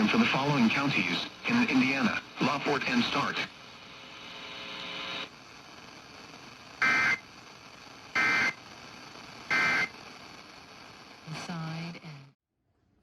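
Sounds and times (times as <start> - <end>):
faint hum: 0.0 - 12.4
buzzy digital code bursts: 6.8 - 7.2, 8.1 - 8.6, 9.5 - 10.0.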